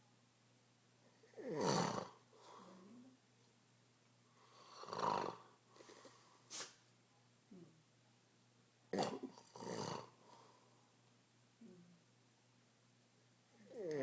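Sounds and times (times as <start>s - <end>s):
man snoring: 1.4s - 2.2s, 4.6s - 5.5s, 9.0s - 10.1s, 13.7s - 14.0s
soft breath: 2.3s - 3.2s, 10.2s - 10.9s.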